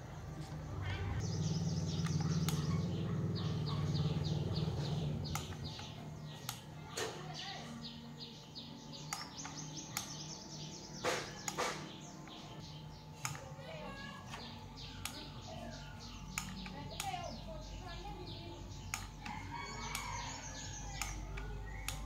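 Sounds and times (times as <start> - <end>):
small bird chirping: 0.0 - 22.0
sharp clicks: 1.2 - 3.0, 3.6 - 6.8, 9.0 - 10.4, 11.0 - 12.5, 13.2 - 13.7, 14.3 - 17.9, 18.7 - 22.0.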